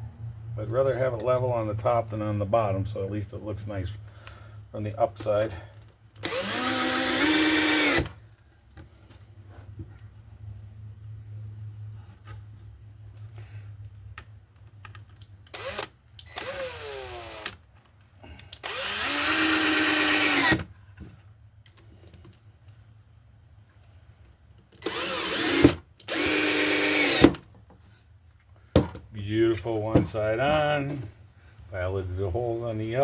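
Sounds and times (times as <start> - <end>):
drill driving screws into wood: 6.2 - 8.2, 15.4 - 17.6, 18.5 - 20.7, 24.8 - 27.4.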